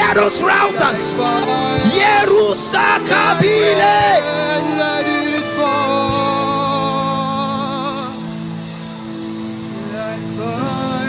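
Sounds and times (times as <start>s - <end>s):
held organ chords: 0.0s - 11.0s.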